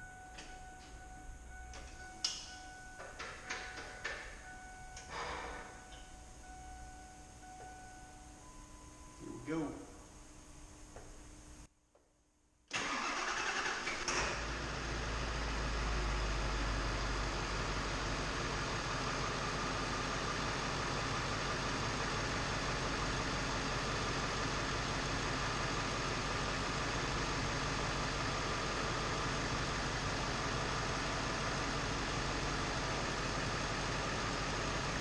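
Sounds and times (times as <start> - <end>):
diesel engine idling: 12.8 - 35.0.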